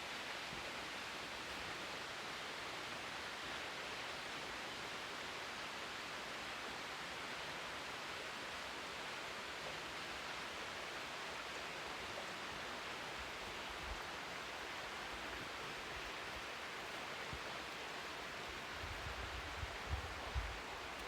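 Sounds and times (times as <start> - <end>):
wind buffeting microphone: 18.7 - 20.6.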